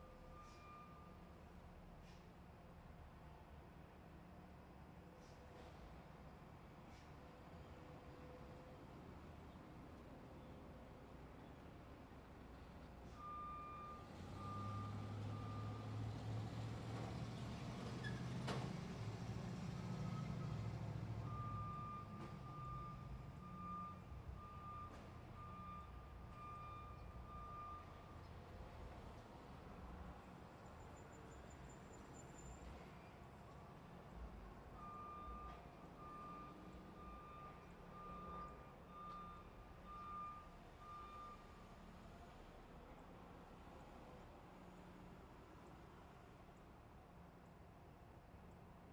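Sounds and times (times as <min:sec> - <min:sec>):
truck reversing alarm beeping: 0:13.2 - 0:16.1, 0:21.2 - 0:28.2, 0:34.8 - 0:42.0.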